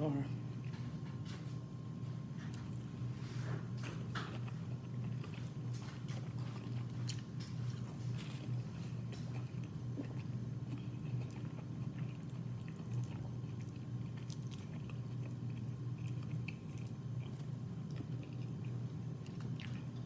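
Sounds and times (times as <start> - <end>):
steady low hum: 0.0 - 20.0
person chewing food: 0.5 - 20.0.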